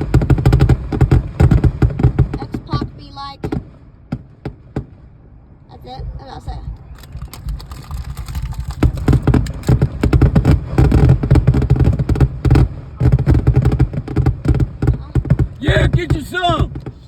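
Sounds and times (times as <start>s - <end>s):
fireworks crackling pops: 6.7s - 17.0s.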